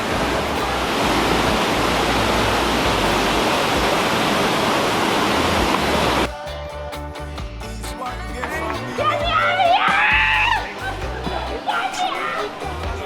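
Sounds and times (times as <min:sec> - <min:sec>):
waterfall rushing: 0:00.0 - 0:06.3, 0:08.9 - 0:13.0.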